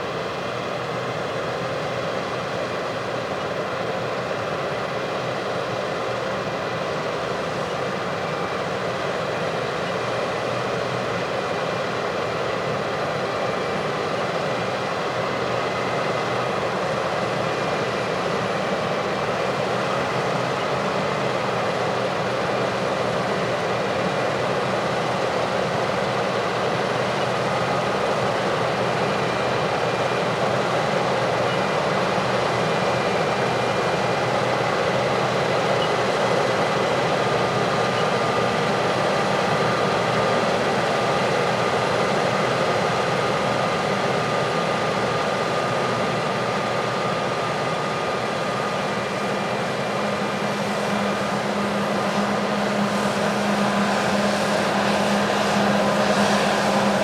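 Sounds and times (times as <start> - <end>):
heavy farm machinery running: 12.2 - 57.0.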